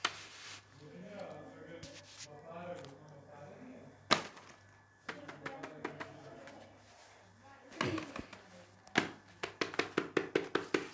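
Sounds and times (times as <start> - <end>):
fidget toy taps and clicks: 5.1 - 6.2.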